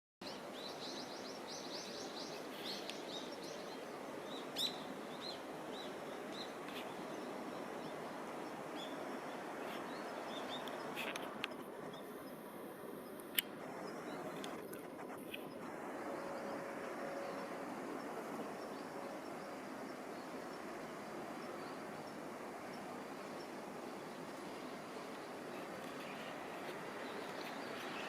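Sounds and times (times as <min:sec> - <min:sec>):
outdoor ambient noise: 0:00.2 - 0:28.0
small birds chirping: 0:16.2 - 0:28.0.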